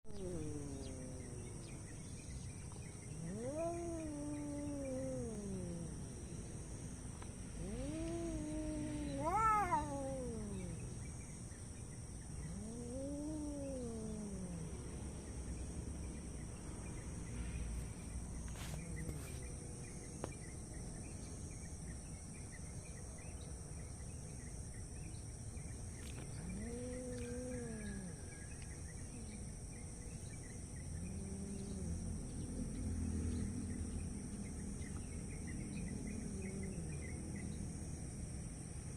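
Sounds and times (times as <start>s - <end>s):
cats yowling: 0.0s - 1.9s, 2.7s - 6.2s, 7.5s - 11.0s, 12.4s - 14.9s, 26.4s - 28.5s, 35.9s - 37.2s.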